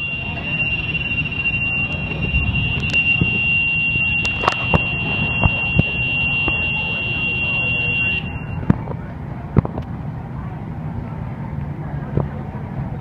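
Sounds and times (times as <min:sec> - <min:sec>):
high-pitched alarm tone: 0:00.0 - 0:08.7
low rumble: 0:00.0 - 0:13.0.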